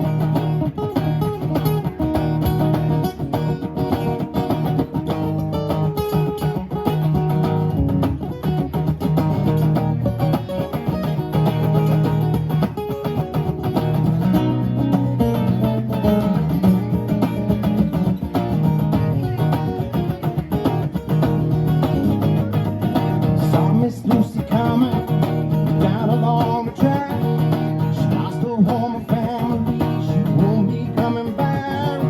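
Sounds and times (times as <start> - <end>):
live guitar music: 0.0 - 32.0.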